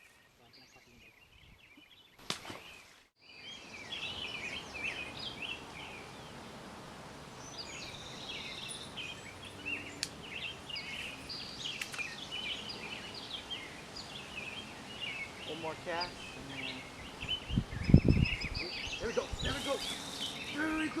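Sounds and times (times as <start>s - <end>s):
birds chirping and singing: 0.0s - 6.4s, 7.4s - 21.0s
outdoor background hiss: 0.0s - 21.0s
sharp clicks: 11.8s - 12.1s.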